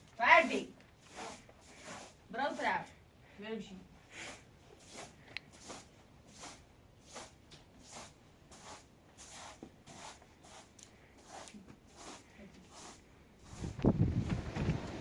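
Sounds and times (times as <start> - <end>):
faint rasping strokes: 1.0 - 2.9, 4.1 - 13.9.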